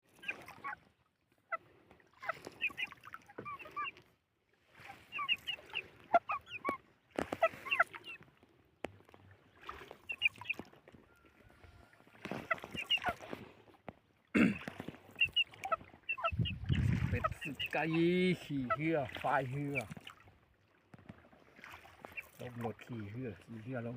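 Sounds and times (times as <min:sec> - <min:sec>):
poultry honking and squawking: 0:02.2 - 0:03.9, 0:04.9 - 0:08.2, 0:10.1 - 0:13.3, 0:15.1 - 0:19.0.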